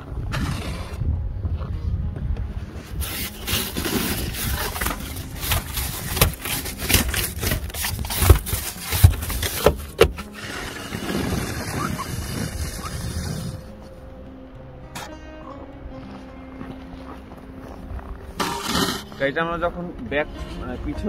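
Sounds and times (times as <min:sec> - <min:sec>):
sharp scrapes and knocks: 0:02.8 - 0:13.4, 0:18.4 - 0:19.2
brush scraping snow off car: 0:02.9 - 0:13.6.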